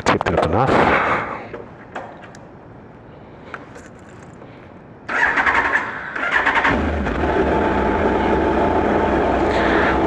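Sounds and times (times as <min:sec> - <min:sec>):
motorcycle electric starter cranking: 0:05.1 - 0:07.5.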